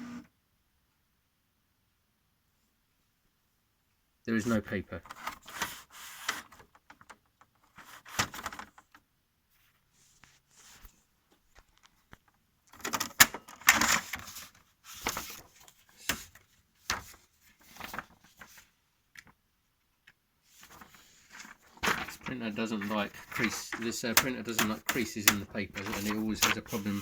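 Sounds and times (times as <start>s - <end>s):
paper rustling: 5.0s - 8.9s, 12.7s - 19.4s, 20.5s - 27.0s
printer paper tray clicks: 21.8s - 27.0s.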